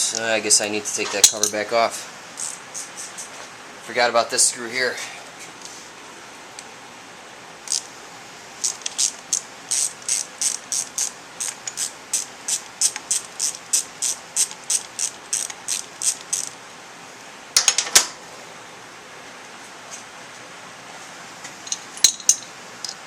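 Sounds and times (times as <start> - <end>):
hand ratchet clicking: 2.4 - 2.6, 8.6 - 16.5.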